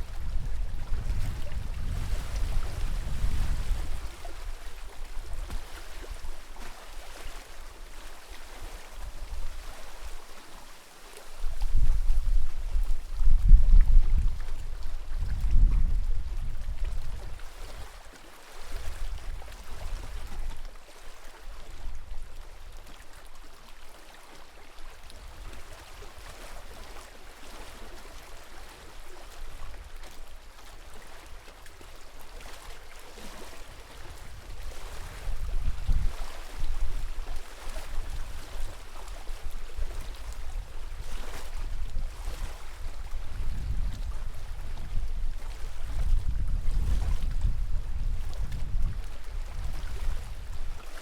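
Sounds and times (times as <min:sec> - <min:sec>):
wind rumbling on microphone: 0:00.0 - 0:06.5, 0:07.2 - 0:10.2, 0:11.4 - 0:17.9, 0:18.7 - 0:20.7, 0:33.6 - 0:51.0
small waves lapping: 0:00.0 - 0:51.0.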